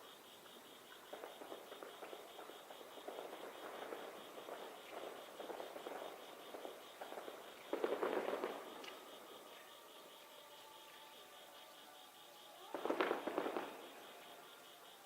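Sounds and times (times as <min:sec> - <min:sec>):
fireworks popping and crackling: 0:01.0 - 0:09.1, 0:12.6 - 0:14.0.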